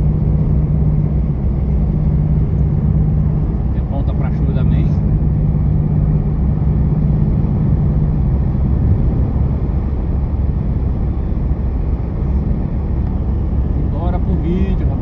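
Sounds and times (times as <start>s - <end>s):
car engine drone: 0.0s - 15.0s
low hum: 0.0s - 15.0s
road noise: 0.0s - 15.0s.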